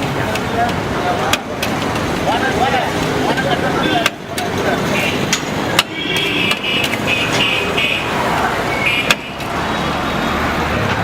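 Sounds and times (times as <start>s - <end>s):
street traffic: 0.0s - 11.0s
vehicle horn honking: 5.9s - 8.1s.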